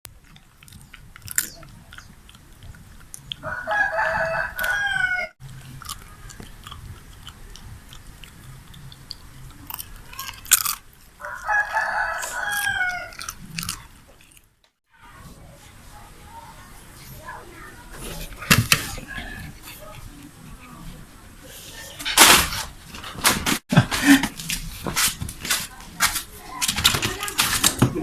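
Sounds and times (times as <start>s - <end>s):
crunchy chewing and biting clicks: 0.1s - 14.6s
rooster crowing: 3.4s - 5.4s, 11.2s - 13.3s.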